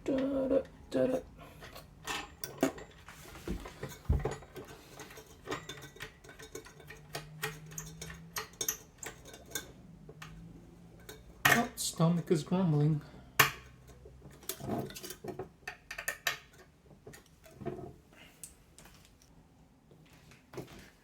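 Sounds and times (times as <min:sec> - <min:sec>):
computer hardware clicks and rattles: 0:03.8 - 0:11.6.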